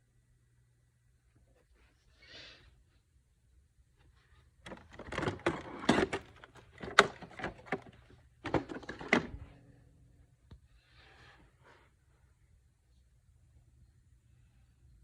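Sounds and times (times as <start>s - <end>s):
faint hum: 0.0s - 15.0s
parts clicking and clattering: 4.6s - 9.4s.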